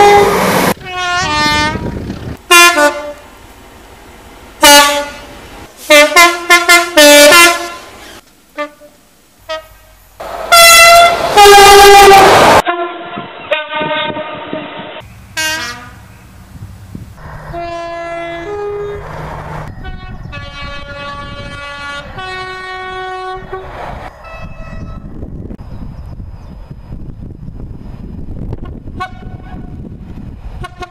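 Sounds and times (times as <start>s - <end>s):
train horns: 0.0s - 3.3s, 4.6s - 16.1s, 17.2s - 25.2s, 28.6s - 29.8s, 30.6s - 30.9s
passing train rumble: 0.0s - 30.9s.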